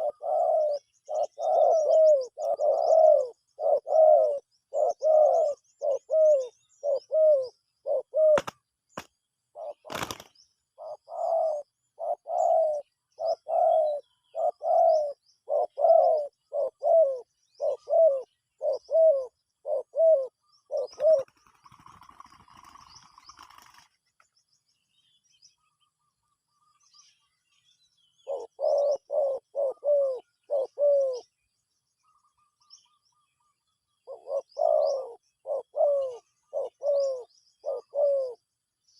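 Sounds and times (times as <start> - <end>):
dove cooing: 0.0 - 8.6, 9.5 - 23.8, 28.2 - 31.3, 34.0 - 38.4
small birds chirping: 0.0 - 38.9.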